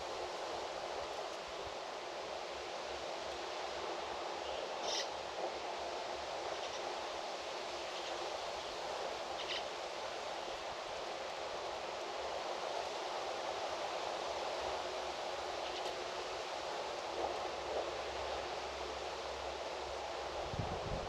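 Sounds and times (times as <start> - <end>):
steady rushing noise: 0.0 - 21.0
faint bird chirps: 4.5 - 5.1.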